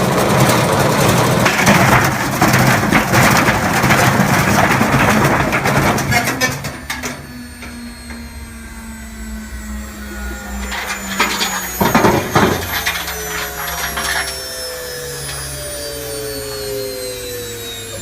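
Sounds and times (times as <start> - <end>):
washing machine motor whining: 0.0 - 18.0
rattling: 9.6 - 15.9.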